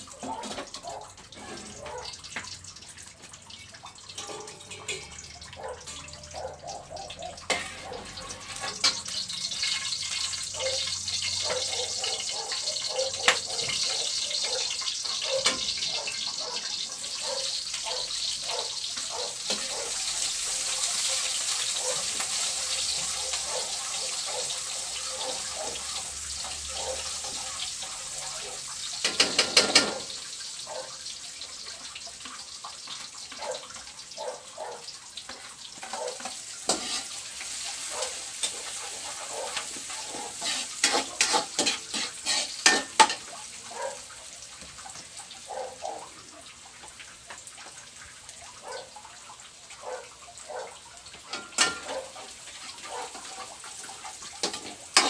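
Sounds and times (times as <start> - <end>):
food sizzling in oil: 0.0 - 55.0
utensil scraping a pan: 0.2 - 1.9, 7.5 - 9.1, 35.8 - 43.3.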